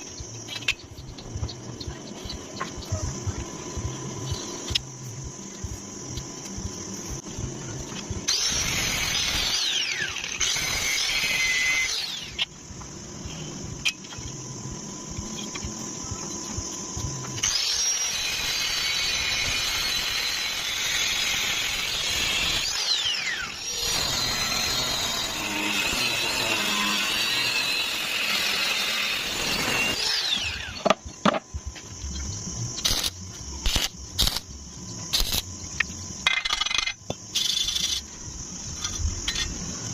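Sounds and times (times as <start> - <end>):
angle grinder whining: 8.3 - 12.5, 17.3 - 31.0.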